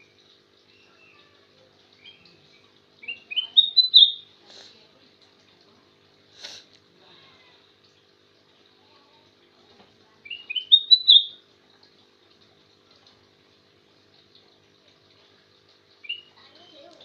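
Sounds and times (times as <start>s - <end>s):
harsh bird chirps: 2.0s - 4.3s, 10.3s - 11.3s, 16.0s - 16.4s
bird whistling notes: 3.0s - 4.2s, 10.3s - 11.3s.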